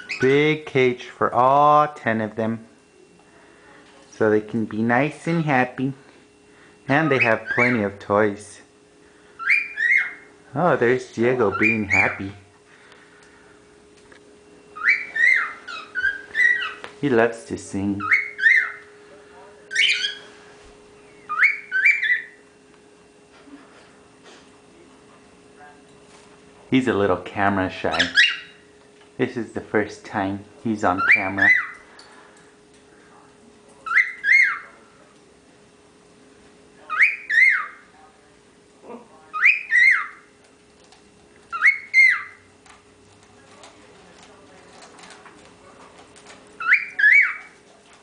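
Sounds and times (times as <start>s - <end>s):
cockatiel whistling: 9.4s - 10.3s, 14.8s - 16.9s, 18.0s - 18.8s, 19.7s - 20.3s, 21.2s - 22.4s, 27.9s - 28.6s, 31.0s - 31.8s, 33.9s - 34.7s, 36.9s - 37.8s, 39.4s - 40.2s, 41.5s - 42.4s, 46.6s - 47.5s.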